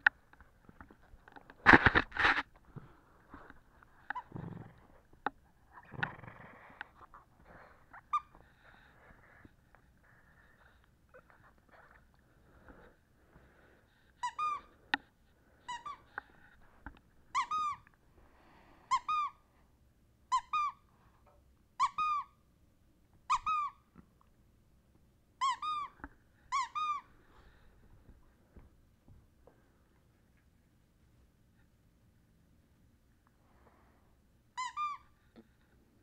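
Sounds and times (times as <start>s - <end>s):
rubber squeaky toy squeaking: 8.0s - 8.4s, 14.2s - 14.7s, 15.7s - 16.2s, 17.3s - 17.8s, 18.9s - 19.4s, 20.3s - 20.8s, 21.8s - 22.4s, 23.3s - 23.8s, 25.4s - 27.1s, 34.6s - 35.2s.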